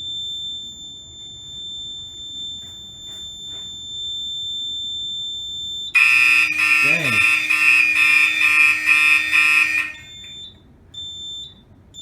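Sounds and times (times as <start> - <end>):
high-pitched alarm buzzer tone: 6.0 - 10.4.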